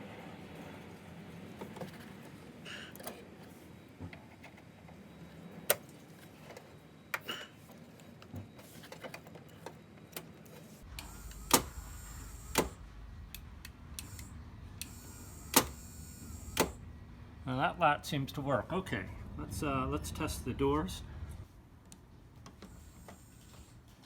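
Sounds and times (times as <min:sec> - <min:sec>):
steady low hum: 0:10.8 - 0:24.0
sharp clicks and knocks: 0:16.5 - 0:16.8.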